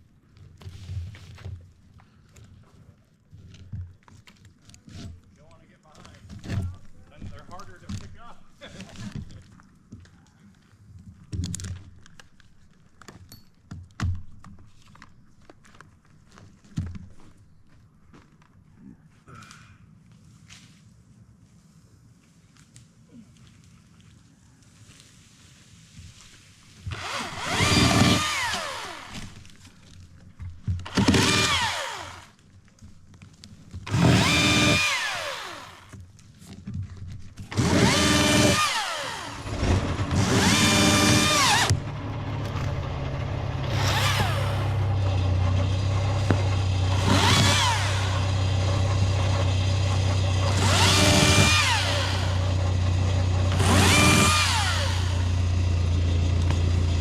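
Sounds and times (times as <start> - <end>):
electric chainsaw whine: 26.9 - 29.4, 30.8 - 32.3, 33.9 - 36.0, 37.5 - 57.0
steady low drone: 41.4 - 50.7.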